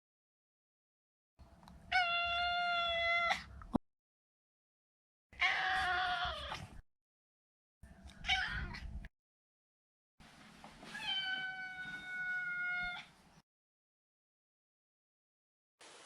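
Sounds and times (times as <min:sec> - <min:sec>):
cat meowing: 0:01.9 - 0:03.4, 0:05.4 - 0:06.6, 0:08.2 - 0:08.8, 0:10.9 - 0:13.1.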